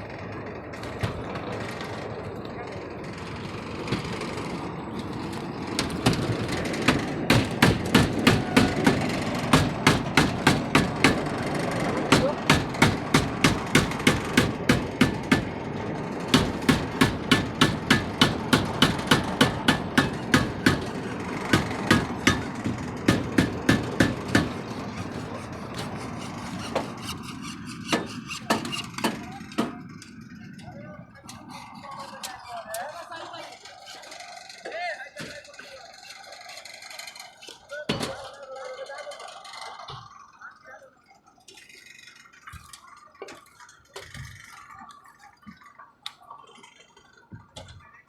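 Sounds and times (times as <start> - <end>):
steady background noise: 0.0 - 48.0
hammer striking: 5.7 - 29.8.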